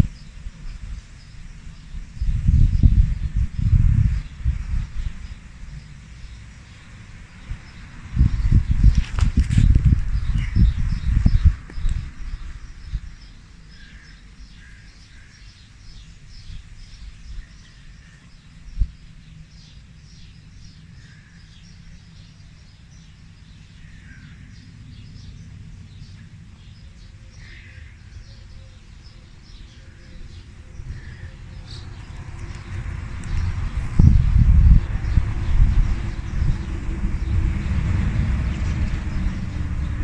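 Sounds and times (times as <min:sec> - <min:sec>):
low rumble: 0:00.0 - 0:06.1, 0:22.0 - 0:40.0
birds chirping: 0:00.0 - 0:40.0.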